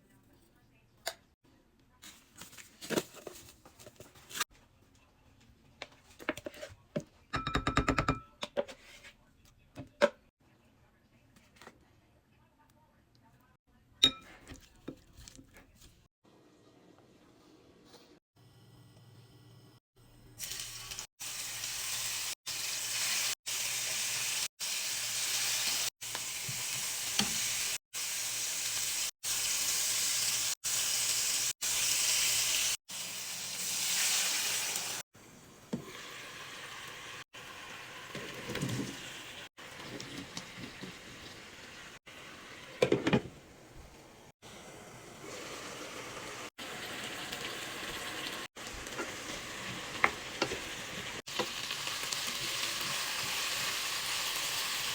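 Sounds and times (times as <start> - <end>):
food sizzling in hot oil: 20.4 - 35.0, 44.5 - 54.9.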